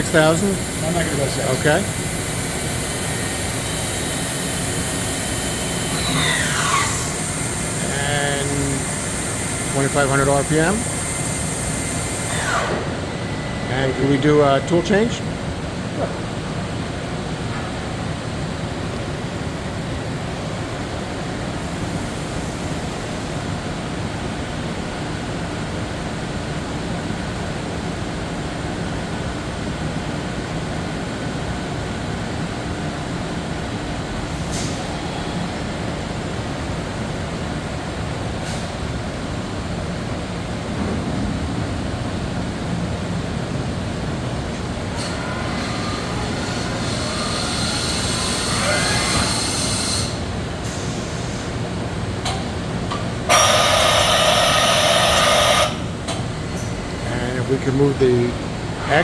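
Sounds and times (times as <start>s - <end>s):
milling machine running: 0.0s - 15.9s, 44.7s - 50.3s, 53.2s - 57.1s.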